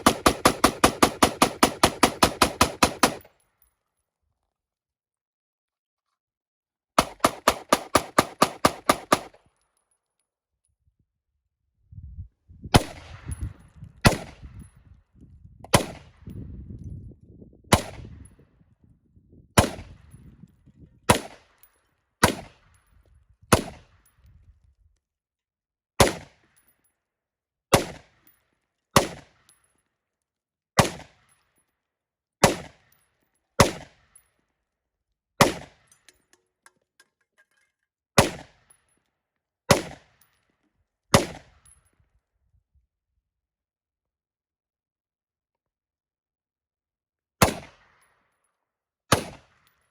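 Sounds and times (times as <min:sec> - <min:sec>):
gunshots: 0:00.0 - 0:03.2, 0:07.0 - 0:09.3, 0:12.8 - 0:13.3, 0:14.1 - 0:14.4, 0:15.7 - 0:16.1, 0:19.6 - 0:19.9, 0:21.1 - 0:21.4, 0:22.2 - 0:22.6, 0:27.7 - 0:28.1, 0:30.8 - 0:31.2, 0:32.4 - 0:32.8, 0:33.6 - 0:34.0, 0:35.4 - 0:35.8, 0:38.2 - 0:38.5, 0:39.7 - 0:40.1, 0:41.2 - 0:41.5, 0:47.4 - 0:47.8, 0:49.1 - 0:49.4.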